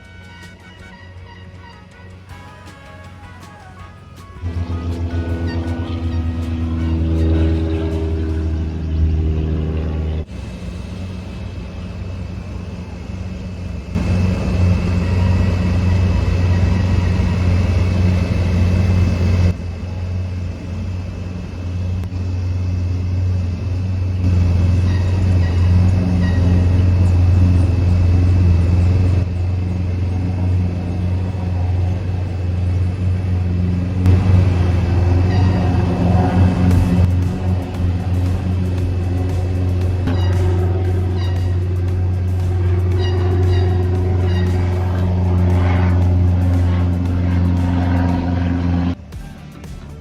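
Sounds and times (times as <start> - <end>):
vehicle engine rumbling: 0.0 - 50.0.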